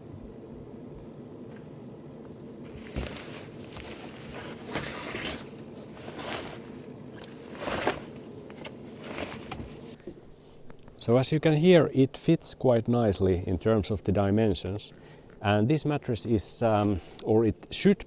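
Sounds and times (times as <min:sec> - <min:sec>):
steady low hum: 0:00.0 - 0:18.0
mattress fabric rustling: 0:02.6 - 0:10.0.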